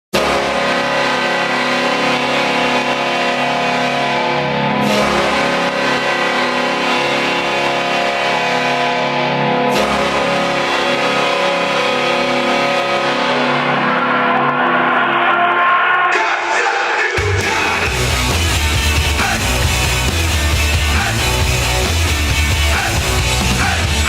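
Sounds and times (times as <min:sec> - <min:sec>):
hockey goal horn blast: 0:00.1 - 0:16.0.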